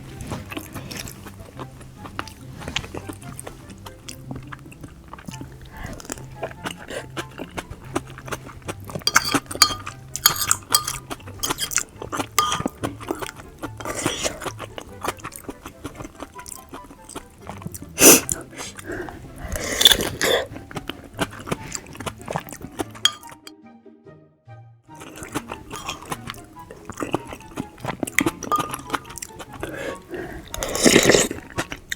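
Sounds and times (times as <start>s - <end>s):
chewing: 0.0s - 23.5s, 24.9s - 31.9s
slurping: 0.0s - 23.5s, 24.9s - 31.9s
background music with low beat: 0.0s - 31.1s
utensils clinking against dish: 8.9s - 14.6s, 21.4s - 23.5s, 25.2s - 26.4s, 27.0s - 29.6s.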